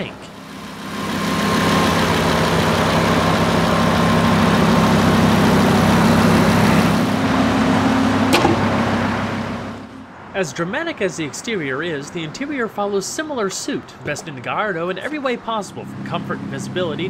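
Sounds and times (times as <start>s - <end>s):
car engine running steadily: 0.0s - 10.0s.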